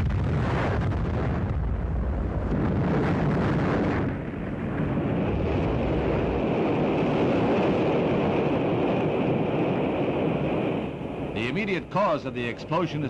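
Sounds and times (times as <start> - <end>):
rocket explosion roar: 0.0 - 13.0.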